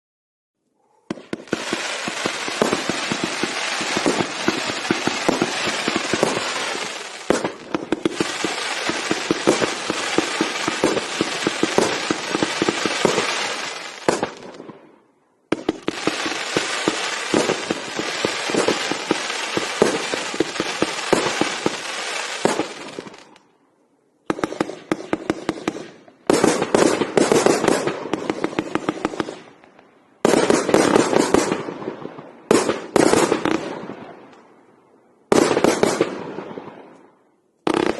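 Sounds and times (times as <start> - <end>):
fireworks cake firing: 1.1 - 14.6, 15.5 - 23.4.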